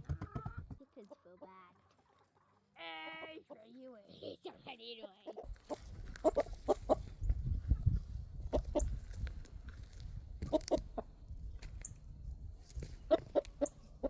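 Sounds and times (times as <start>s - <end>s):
chickens clucking: 0.0s - 9.1s, 10.4s - 11.2s, 12.8s - 14.0s.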